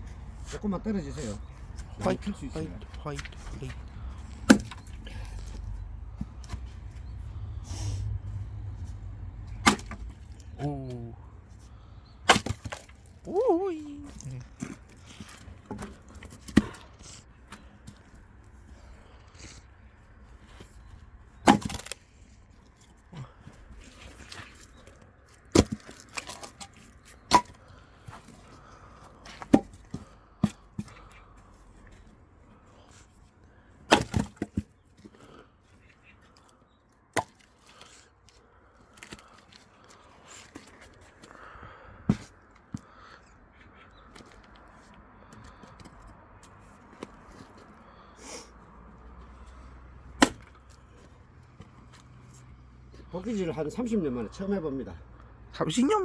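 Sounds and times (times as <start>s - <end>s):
axe chopping firewood: 3.0s - 6.9s, 8.6s - 11.0s, 12.1s - 18.1s, 21.4s - 22.0s, 25.4s - 31.1s, 33.8s - 35.2s, 37.1s - 37.9s, 49.5s - 52.1s.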